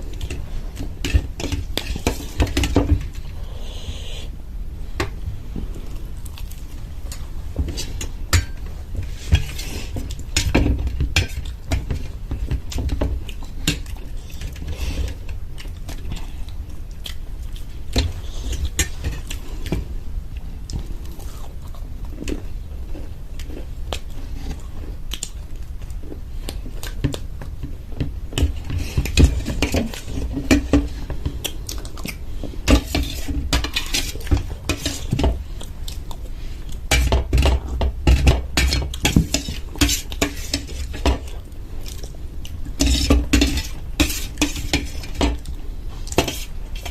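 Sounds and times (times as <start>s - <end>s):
chewing: 5.7s - 7.2s, 13.2s - 27.6s, 31.0s - 32.5s.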